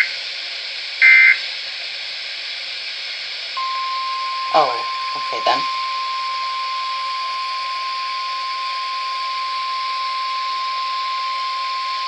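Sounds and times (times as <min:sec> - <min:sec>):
radio hiss: 0:00.0 - 0:00.3, 0:01.0 - 0:01.4, 0:04.5 - 0:05.7
steady warning alarm tone: 0:01.0 - 0:01.4, 0:03.6 - 0:12.0.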